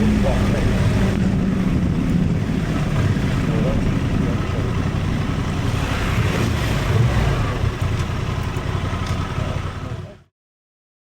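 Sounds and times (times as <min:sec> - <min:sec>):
motorcycle engine rumble: 0:00.0 - 0:10.3
ride noise: 0:00.0 - 0:10.3.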